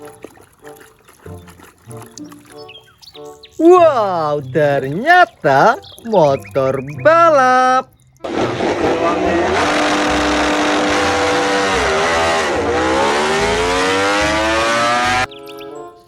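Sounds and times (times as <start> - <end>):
motorcycle engine revving: 8.2 - 15.3.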